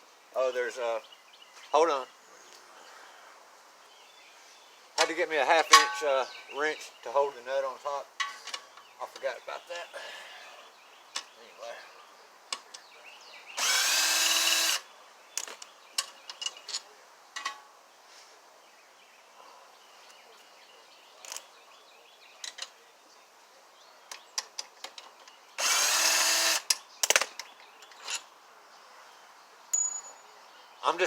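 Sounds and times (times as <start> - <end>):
power drill spinning out bolts: 13.6 - 14.8, 25.6 - 26.7.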